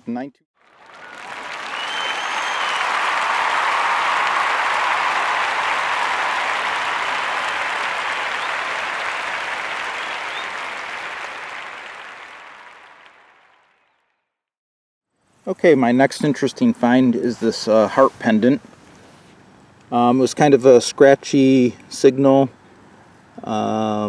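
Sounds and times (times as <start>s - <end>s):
crowd applauding: 0.6s - 13.9s
whistle from crowd: 0.8s - 13.0s.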